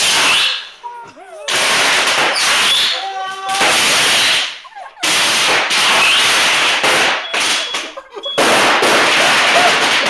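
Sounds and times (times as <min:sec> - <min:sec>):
firework rushing hiss: 0:00.0 - 0:00.6, 0:01.5 - 0:03.0, 0:03.6 - 0:07.6.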